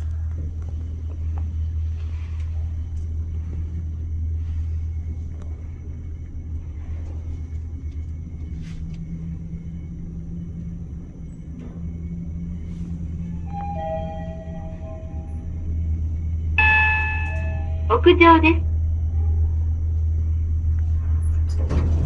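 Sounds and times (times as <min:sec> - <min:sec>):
elevator car humming and rumbling: 0:00.0 - 0:22.0.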